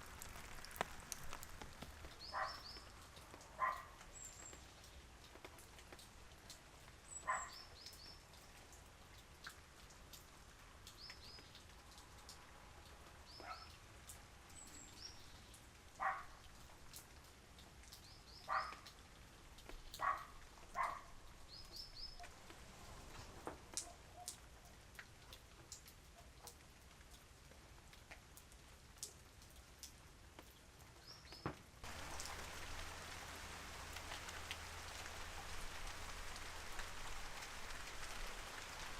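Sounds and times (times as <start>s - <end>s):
light rain: 0.0s - 38.9s
water drips: 0.0s - 38.9s
small birds chirping: 0.7s - 5.2s, 7.0s - 8.6s, 10.8s - 11.7s, 13.2s - 16.4s, 17.8s - 18.9s, 19.7s - 22.3s.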